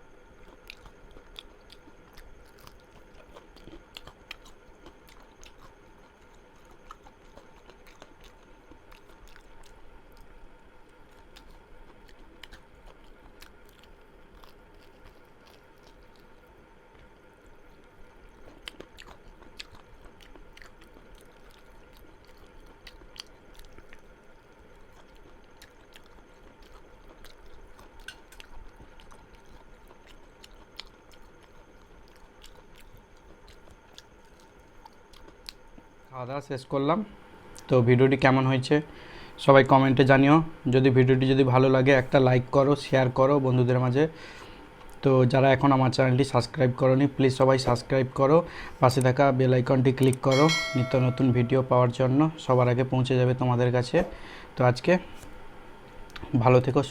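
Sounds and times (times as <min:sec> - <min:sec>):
person chewing food: 0:00.0 - 0:36.1, 0:44.2 - 0:45.0
faint steady hum: 0:00.0 - 0:56.9.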